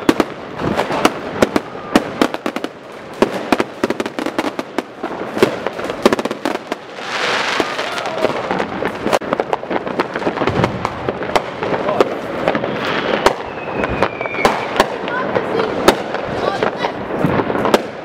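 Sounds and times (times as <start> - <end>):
continuous crackling hiss: 0.0 - 13.2
fireworks bangs and cracks: 0.0 - 18.0.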